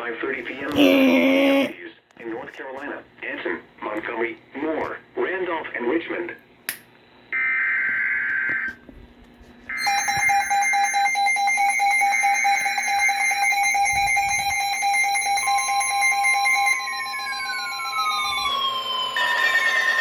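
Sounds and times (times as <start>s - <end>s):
electronic alarm beeping: 9.7s - 20.0s
steady warning alarm tone: 9.7s - 20.0s.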